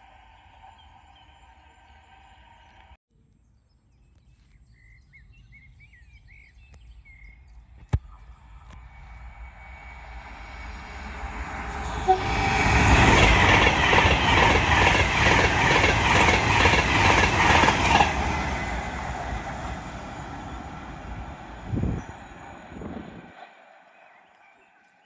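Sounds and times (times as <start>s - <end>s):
train passing at speed: 0.0s - 3.0s, 8.4s - 24.9s
clatter of train wheels: 9.0s - 23.7s.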